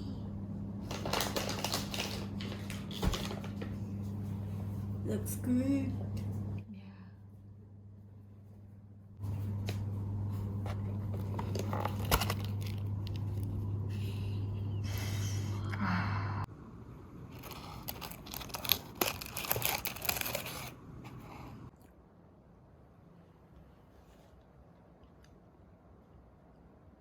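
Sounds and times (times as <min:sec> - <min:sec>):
steady low hum: 0:00.0 - 0:27.0
handling scraping and crinkling: 0:00.8 - 0:03.7, 0:09.6 - 0:13.6, 0:17.3 - 0:21.7.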